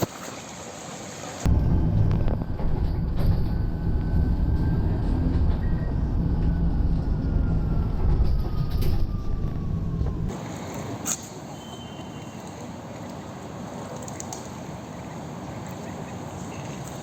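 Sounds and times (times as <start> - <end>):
vehicle engine rumbling: 1.4 - 10.6
faint whine falling in pitch: 1.5 - 10.3.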